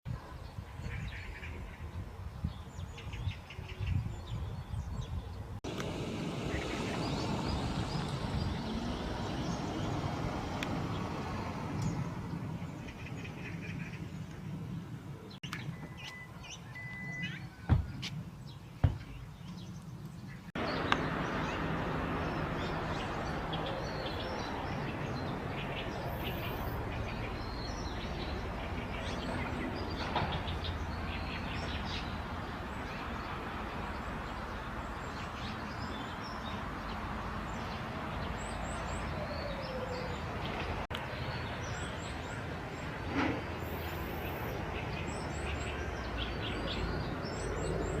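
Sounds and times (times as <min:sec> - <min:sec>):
outdoor background noise: 0:00.1 - 0:48.0
magpies chirping: 0:20.3 - 0:33.1, 0:38.4 - 0:40.6.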